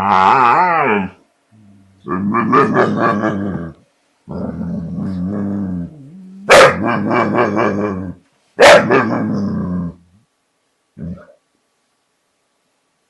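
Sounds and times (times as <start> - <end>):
dog growling moans: 0.0 - 8.2, 8.9 - 10.2, 11.0 - 11.4
dog barking sharply: 6.5 - 6.8, 8.6 - 9.0.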